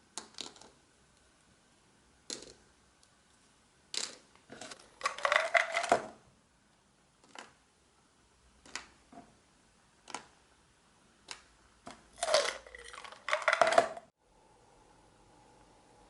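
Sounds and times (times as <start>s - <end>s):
pills rattling clatter: 5.0s - 6.0s, 12.2s - 14.0s.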